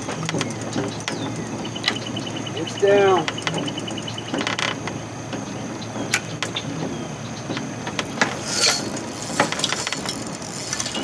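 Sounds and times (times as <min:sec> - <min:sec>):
fishing reel ratcheting: 0:08.0 - 0:11.0.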